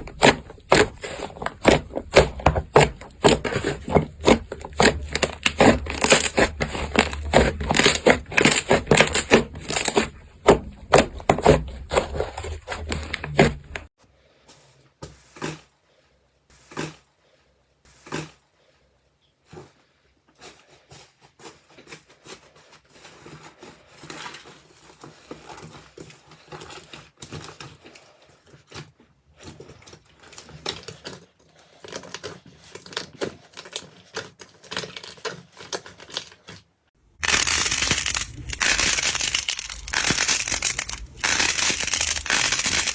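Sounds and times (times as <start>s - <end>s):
hands squishing slime: 0.0s - 13.9s.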